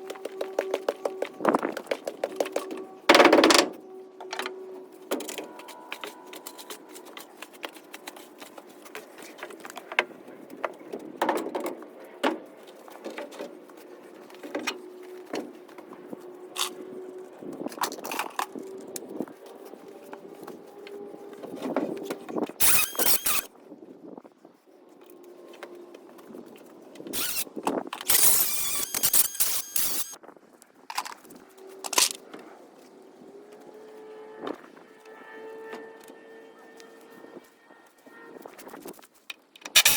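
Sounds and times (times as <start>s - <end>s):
squeal: 22.6s - 23.5s.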